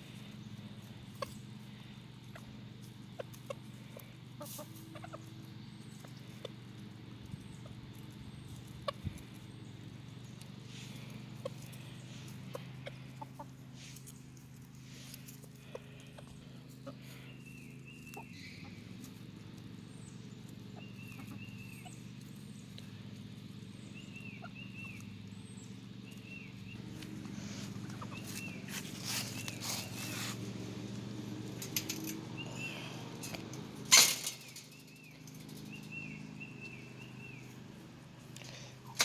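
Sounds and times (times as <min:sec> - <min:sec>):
steady low hum: 0:05.4 - 0:39.0
bird chirping: 0:15.6 - 0:18.9, 0:19.8 - 0:23.0, 0:23.6 - 0:30.4, 0:32.4 - 0:33.0, 0:34.2 - 0:37.6
handling knocks and rattles: 0:31.4 - 0:32.3, 0:33.3 - 0:36.1.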